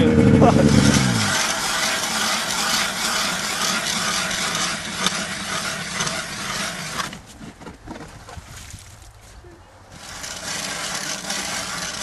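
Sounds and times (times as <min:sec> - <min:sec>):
small vehicle engine running: 0:00.0 - 0:07.2, 0:09.9 - 0:12.0.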